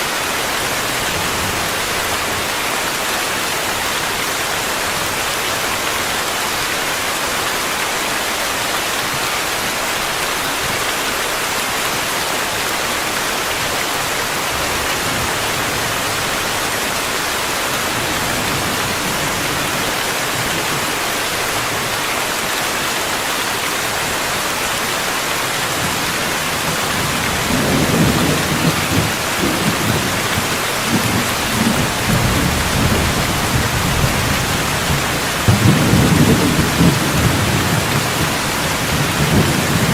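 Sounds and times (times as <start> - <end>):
steady rainfall: 0.0 - 39.9
rolling thunder rumble: 26.5 - 39.9.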